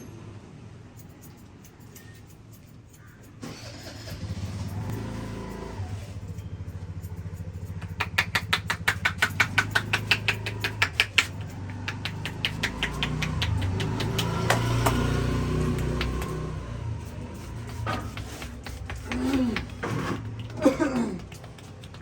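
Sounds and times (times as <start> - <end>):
vehicle engine droning: 2.9 - 22.0
rhythmic hand slaps: 7.0 - 22.0.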